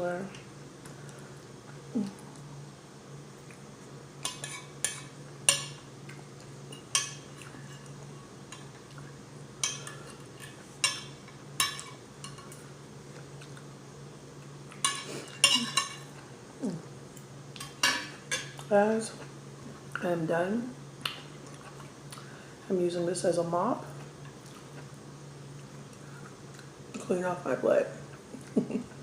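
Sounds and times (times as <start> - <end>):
cutlery clinking on a plate: 4.2 - 5.8, 9.6 - 12.6, 14.8 - 16.1.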